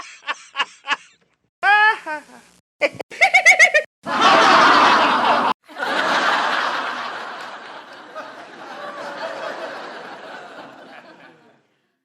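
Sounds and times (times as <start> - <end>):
canned audience laughter: 3.2 - 11.6.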